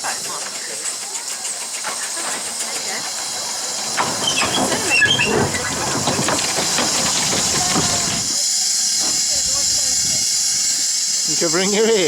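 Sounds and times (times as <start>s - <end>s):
train clanking and rumbling: 0.0s - 10.8s
steam locomotive hissing: 0.0s - 12.0s.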